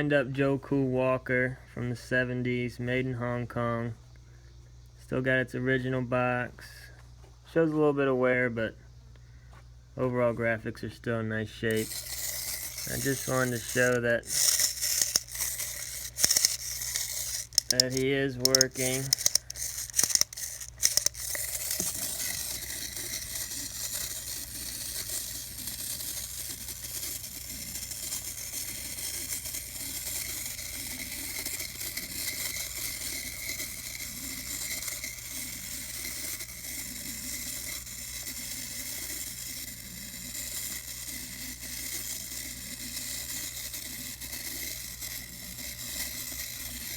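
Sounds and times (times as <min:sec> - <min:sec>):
wind-up toy rattling buzz: 0:11.7 - 0:46.9.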